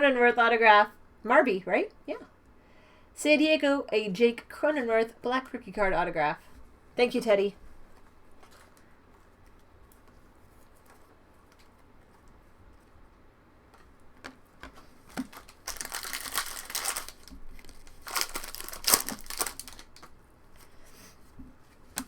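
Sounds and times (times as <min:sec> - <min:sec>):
foil wrapper crinkling and tearing: 0:15.1 - 0:20.2.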